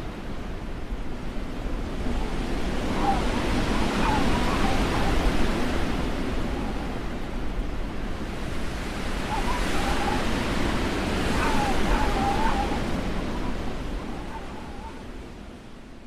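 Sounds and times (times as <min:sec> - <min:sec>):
whistling wind howl: 0:00.0 - 0:16.0
blizzard wind rushing: 0:00.3 - 0:15.7.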